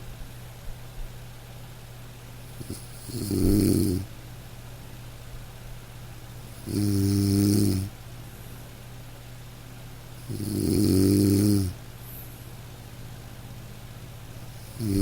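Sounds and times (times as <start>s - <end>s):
person snoring: 2.6s - 4.1s, 6.6s - 7.9s, 10.2s - 11.8s, 14.6s - 15.0s.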